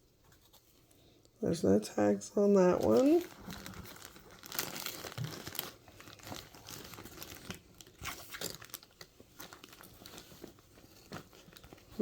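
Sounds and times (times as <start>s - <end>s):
packaging and cloth crinkling: 2.5s - 12.0s.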